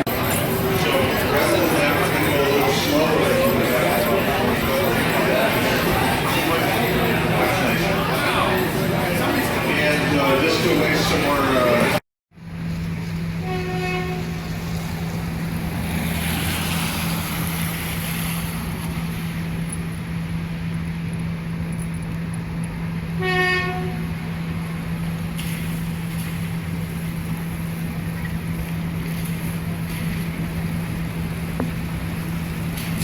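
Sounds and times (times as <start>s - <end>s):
train rolling drone: 0.0s - 33.0s
train whistle toots: 13.4s - 14.5s, 23.2s - 24.2s.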